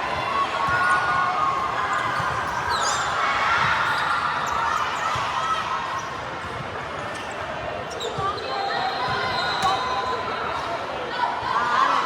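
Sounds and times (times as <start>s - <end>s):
murmur of voices: 4.6s - 12.0s.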